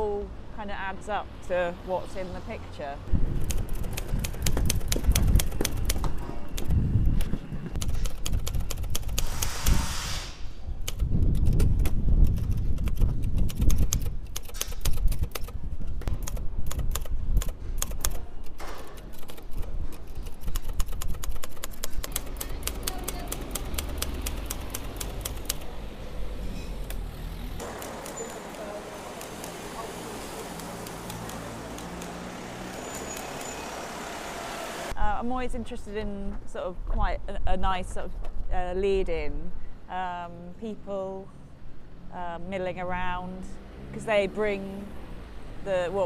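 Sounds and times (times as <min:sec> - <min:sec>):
typewriter key strikes: 0:16.2 - 0:25.6, 0:27.6 - 0:29.6.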